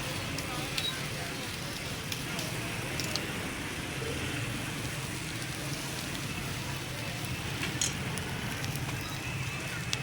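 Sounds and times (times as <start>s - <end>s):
food sizzling on griddle: 0.0s - 10.0s.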